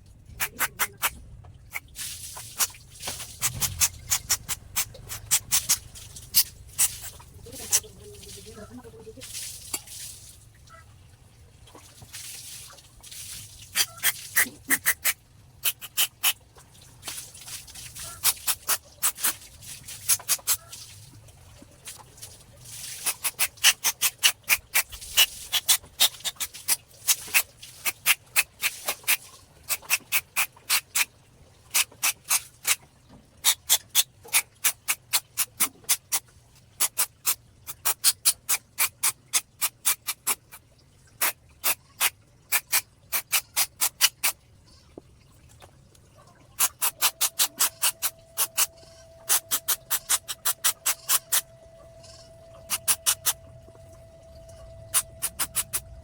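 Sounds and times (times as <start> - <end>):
steady tone: 47.0 - 56.0.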